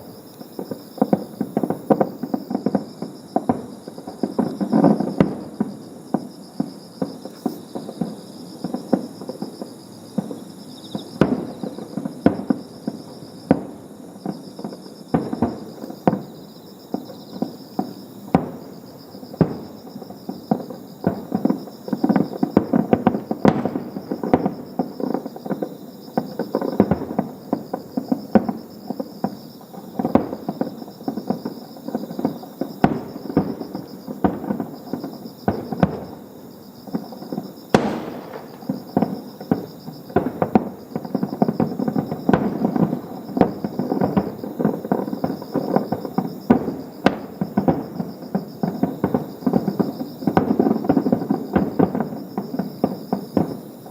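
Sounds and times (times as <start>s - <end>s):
firework crackling: 0.0s - 6.3s, 17.4s - 53.9s
firework shells bursting: 37.7s - 48.0s.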